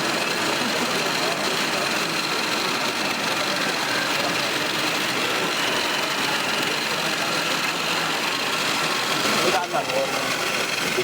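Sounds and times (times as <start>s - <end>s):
mechanical whir: 0.0s - 11.0s.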